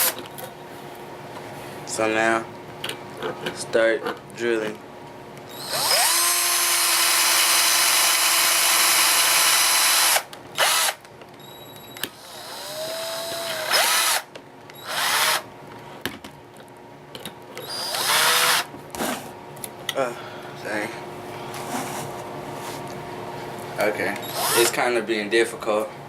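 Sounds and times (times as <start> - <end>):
electric drill drilling into metal can: 5.5 - 11.0, 12.1 - 15.4, 17.6 - 18.7, 24.2 - 24.8.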